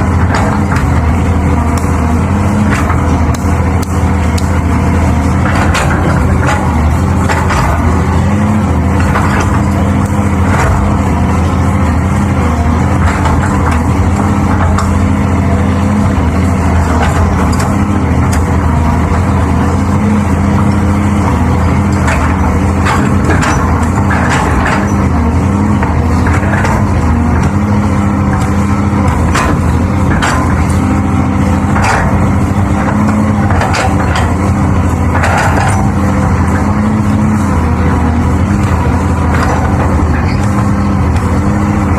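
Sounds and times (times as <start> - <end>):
heavy diesel engine running: 0.0 - 41.9
knocks and clanks: 0.0 - 41.9.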